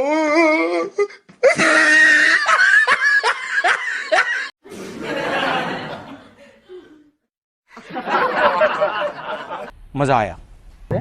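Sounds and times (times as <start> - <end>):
loud laughter: 1.6 - 6.6, 7.8 - 9.7.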